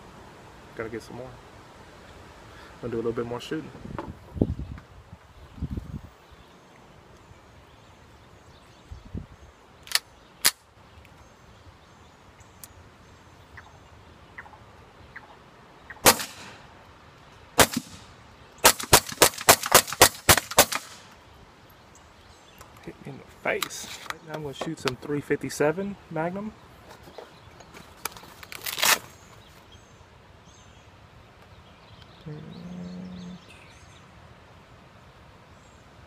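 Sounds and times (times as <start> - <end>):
suppressed rifle shots: 16.0 - 16.6, 17.6 - 21.1.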